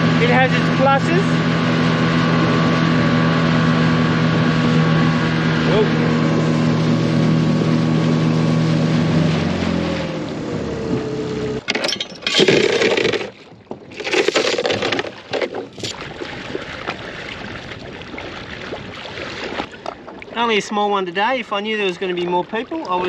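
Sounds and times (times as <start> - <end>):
outboard motor running: 0.0 - 11.7, 12.3 - 23.0
crunching scraping noises: 12.2 - 16.0.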